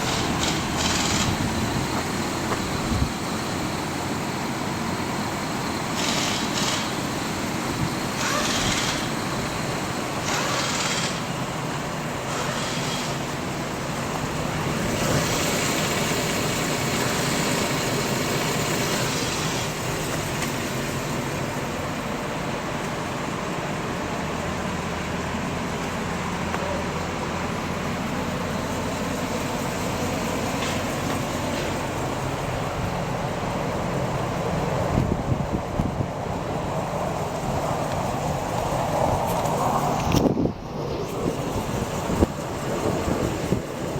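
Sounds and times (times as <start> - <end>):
road and traffic noise: 0.0 - 43.9
vehicle engine running: 0.0 - 43.9
short bursts of hiss: 6.0 - 7.2, 10.2 - 11.4, 12.3 - 13.5.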